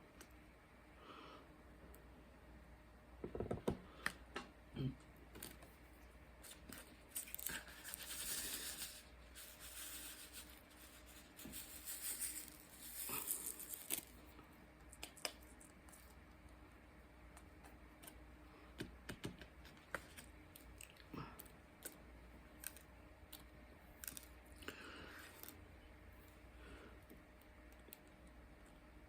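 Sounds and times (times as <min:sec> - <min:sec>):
plastic film crinkling: 0:06.4 - 0:14.3.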